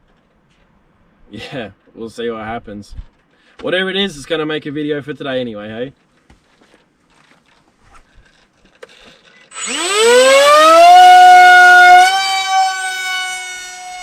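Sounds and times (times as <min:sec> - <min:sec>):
motor and propeller whine: 0:09.5 - 0:14.0.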